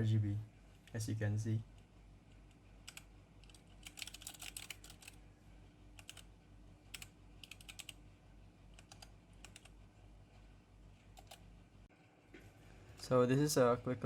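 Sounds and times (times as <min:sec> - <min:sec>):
mechanical keyboard typing clicks: 0:02.8 - 0:05.2, 0:06.0 - 0:06.3, 0:06.9 - 0:08.0, 0:08.8 - 0:09.8, 0:11.2 - 0:11.4.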